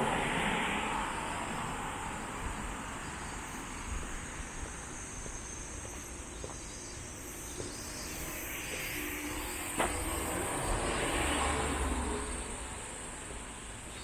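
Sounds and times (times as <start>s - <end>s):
vehicle passing: 9.0s - 13.5s.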